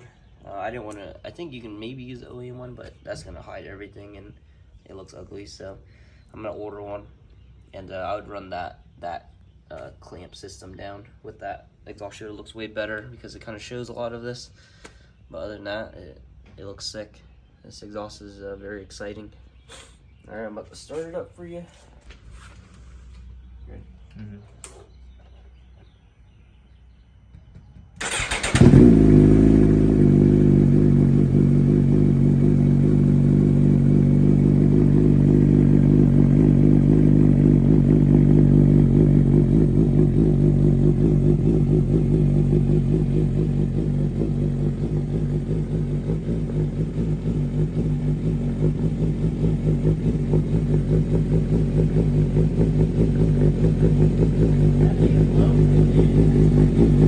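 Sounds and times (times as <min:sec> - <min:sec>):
motorcycle engine starting and idling: 0:27.4 - 0:57.0.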